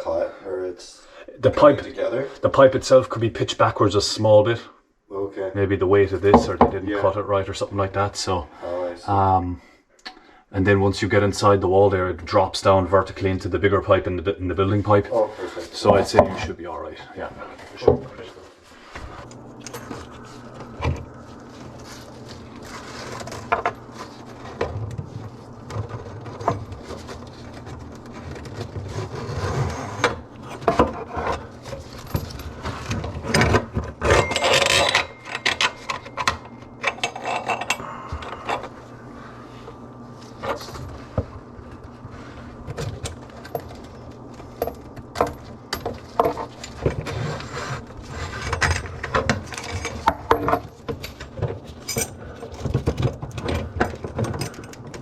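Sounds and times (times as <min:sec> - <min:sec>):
tools clicking and rattling: 0:30.5 - 0:38.7, 0:48.3 - 0:55.0.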